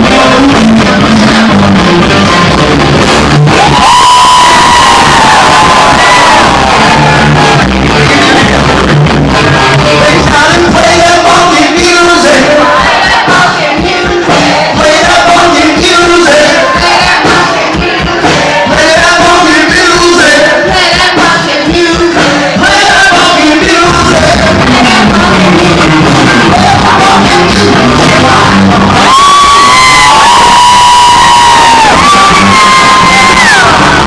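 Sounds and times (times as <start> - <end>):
man singing: 0.0 - 2.3, 7.7 - 8.8, 9.4 - 34.0
live band playing: 0.0 - 34.0
crowd shouting: 3.5 - 8.5, 12.3 - 15.5, 27.8 - 34.0.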